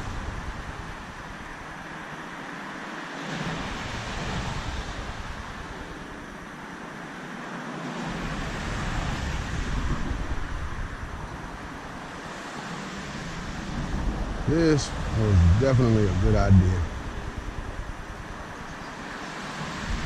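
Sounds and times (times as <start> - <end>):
steady outdoor rushing noise: 10.3 - 20.0
wind buffeting microphone: 13.4 - 19.2.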